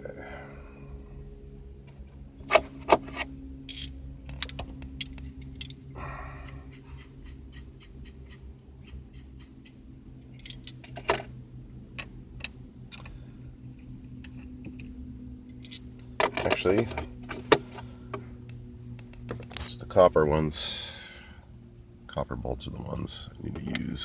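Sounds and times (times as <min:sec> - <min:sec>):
steady low hum: 0:00.0 - 0:24.0
metal bolts clinking: 0:03.7 - 0:11.3, 0:15.5 - 0:17.7.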